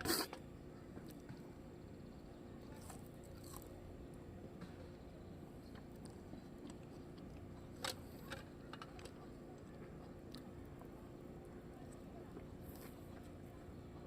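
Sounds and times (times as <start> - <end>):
low background rumble: 0.5 - 14.0
person chewing: 2.7 - 3.7.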